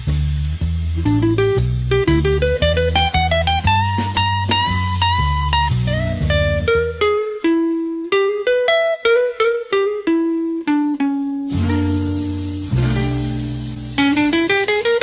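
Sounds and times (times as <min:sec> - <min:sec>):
bass line: 0:00.0 - 0:07.2, 0:11.5 - 0:15.0
electric guitar picking notes: 0:01.0 - 0:15.0.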